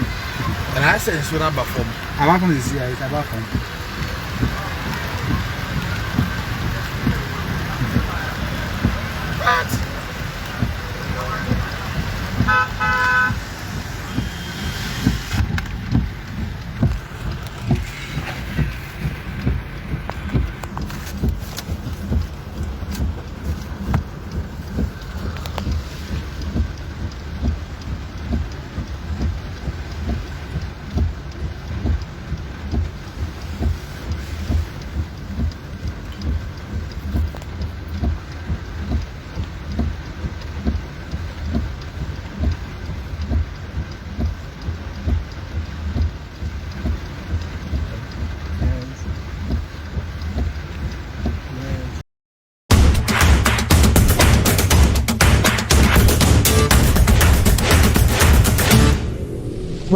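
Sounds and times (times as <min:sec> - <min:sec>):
rain falling: 0:00.0 - 0:52.0, 0:52.7 - 0:59.9
road traffic rumble: 0:00.0 - 0:52.0, 0:52.7 - 0:59.9
car horn toot: 0:09.3 - 0:10.0, 0:12.4 - 0:14.6.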